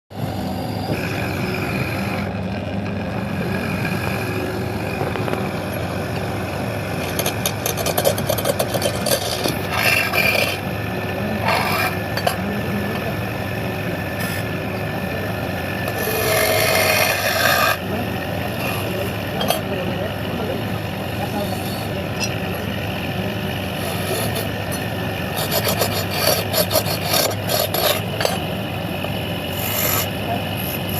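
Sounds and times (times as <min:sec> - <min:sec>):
wood lathe running: 0:00.2 - 0:30.9
turning tool cutting wood: 0:03.3 - 0:15.0, 0:15.6 - 0:20.2, 0:21.2 - 0:28.5, 0:29.4 - 0:30.9.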